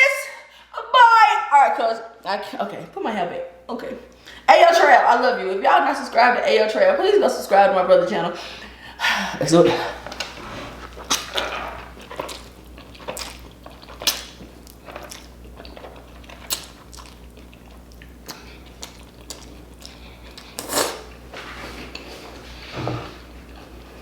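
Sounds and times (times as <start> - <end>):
wet chewing and smacking: 10.0 - 21.2.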